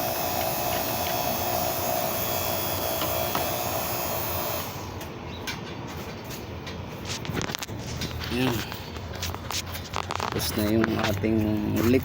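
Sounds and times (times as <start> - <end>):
vacuum pump running: 0.0 - 5.2.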